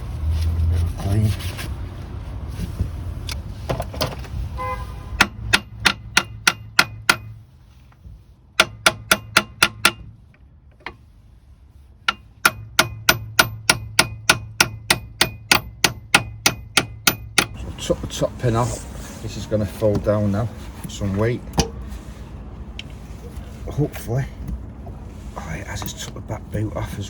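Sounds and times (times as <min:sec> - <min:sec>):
hammer striking steel: 0:05.2 - 0:07.4, 0:08.6 - 0:10.1, 0:12.1 - 0:17.6.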